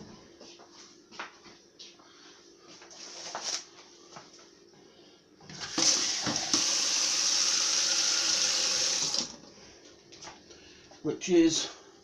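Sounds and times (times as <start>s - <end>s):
water running from tap: 5.6s - 9.4s.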